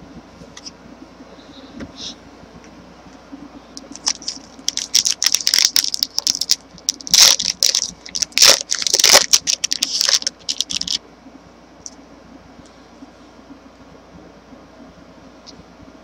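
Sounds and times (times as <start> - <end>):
wrapper crinkling and tearing: 3.9 - 11.0.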